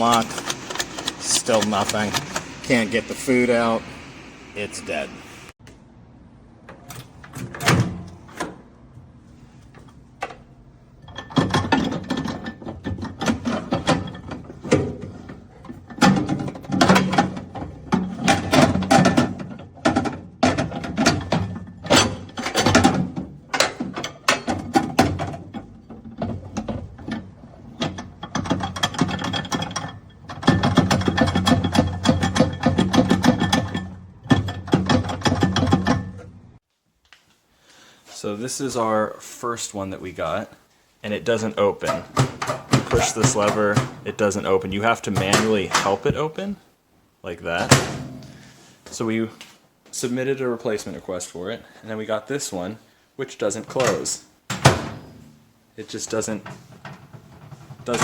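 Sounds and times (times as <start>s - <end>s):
steady hum: 0.0s - 6.5s.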